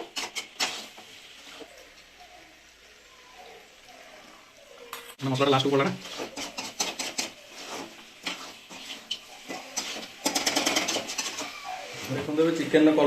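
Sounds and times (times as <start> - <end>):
spoon scraping a pan: 0.0 - 1.9, 5.5 - 12.4
food sizzling: 0.0 - 13.0.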